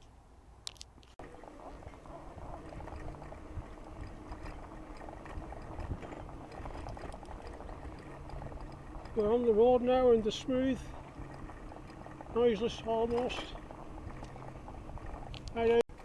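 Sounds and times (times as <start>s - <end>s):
bicycle tyres rolling on road: 1.0s - 16.0s
wind on microphone: 1.2s - 9.2s.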